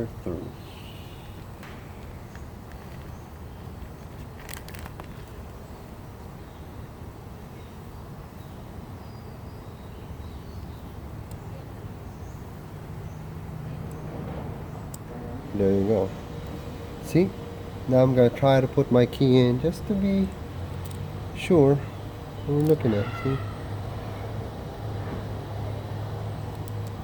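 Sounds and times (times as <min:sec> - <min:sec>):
low rumble and hiss: 0:00.0 - 0:27.0
faint bird chirps: 0:00.4 - 0:03.4
metal lock tumblers clicking: 0:02.0 - 0:05.6, 0:19.1 - 0:21.6, 0:22.4 - 0:23.0.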